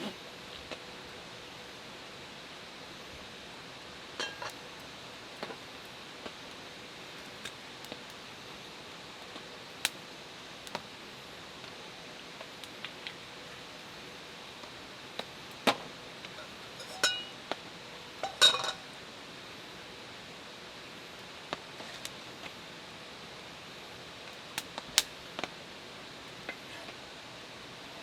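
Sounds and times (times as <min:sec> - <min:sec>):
cookware and utensils clinking: 0:04.2 - 0:04.6, 0:16.8 - 0:17.4, 0:18.2 - 0:18.9.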